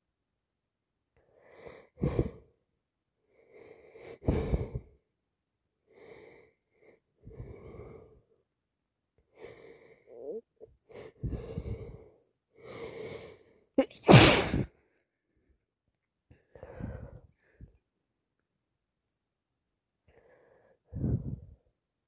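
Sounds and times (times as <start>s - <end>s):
wheezy gasping breaths: 1.2s - 2.6s, 3.3s - 5.0s, 9.3s - 13.6s, 16.3s - 17.8s
person sneezing: 13.8s - 14.7s.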